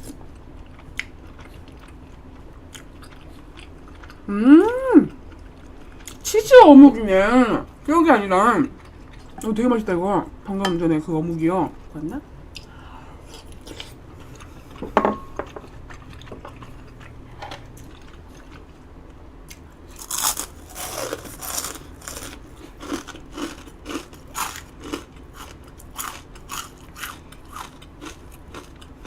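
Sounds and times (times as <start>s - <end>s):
crunchy chewing: 0.0s - 4.3s, 19.5s - 29.0s
bite into crispy food: 19.9s - 28.7s.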